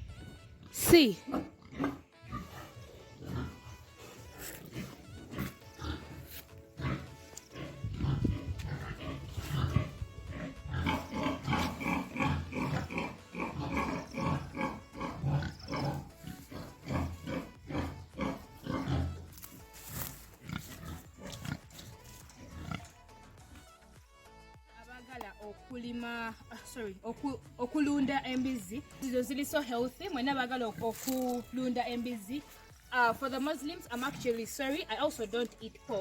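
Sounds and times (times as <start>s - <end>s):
music playing: 0.0s - 36.0s
pigs grunting: 0.1s - 23.1s, 33.4s - 34.8s.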